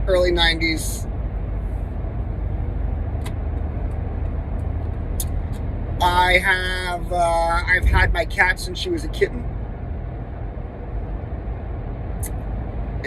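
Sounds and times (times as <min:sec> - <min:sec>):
person speaking: 0:00.0 - 0:01.0, 0:06.0 - 0:09.4
low rumble: 0:00.0 - 0:13.0.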